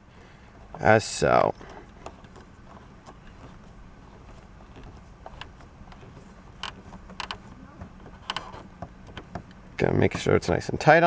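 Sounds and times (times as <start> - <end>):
steady low hum: 0.0 - 11.0
screwdriver clicks and scrapes: 8.1 - 9.3.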